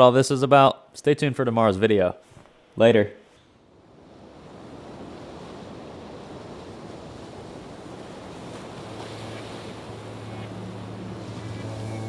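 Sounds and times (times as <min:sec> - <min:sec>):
steady rushing noise: 0:07.7 - 0:12.0
low steady hum: 0:08.3 - 0:12.0.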